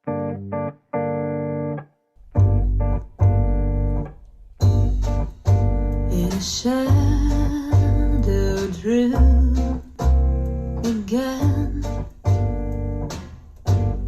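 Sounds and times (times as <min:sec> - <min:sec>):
low bass: 0:02.2 - 0:14.0
keyboard chords: 0:02.4 - 0:06.1
person singing: 0:06.1 - 0:10.1, 0:10.8 - 0:12.3.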